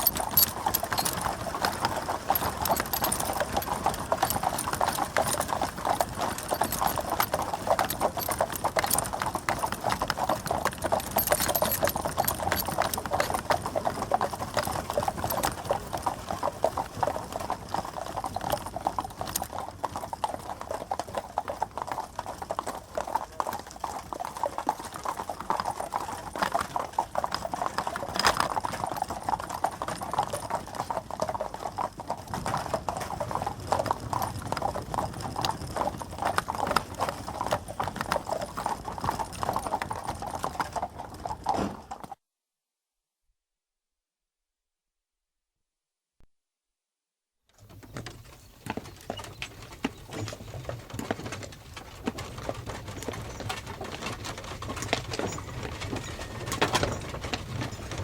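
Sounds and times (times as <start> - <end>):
sharp hoof clack: 0.0 - 19.5, 47.7 - 58.0
horse hooves clip-clopping: 0.0 - 42.2, 47.6 - 58.0.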